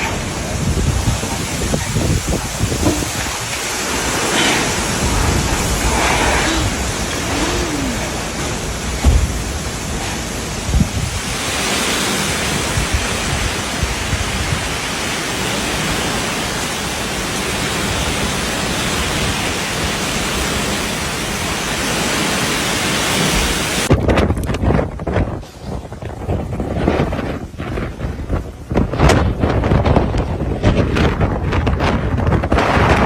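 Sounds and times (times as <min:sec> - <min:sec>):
storm wind rushing hiss: 0:00.0 - 0:33.0
wind buffeting microphone: 0:00.0 - 0:33.0
low rumble: 0:04.6 - 0:11.2.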